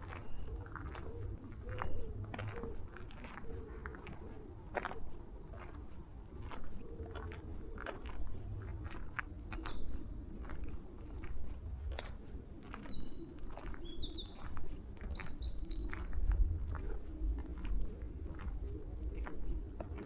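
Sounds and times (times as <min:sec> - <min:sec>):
footsteps on path: 0:00.0 - 0:20.0
songbird twittering and trilling: 0:08.2 - 0:16.8.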